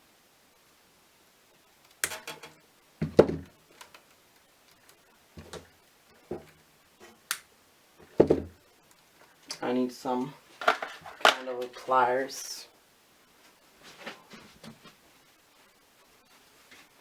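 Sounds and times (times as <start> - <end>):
hard objects knocking and clunking: 2.1 - 3.6, 5.4 - 5.7, 8.0 - 8.6, 10.6 - 11.4.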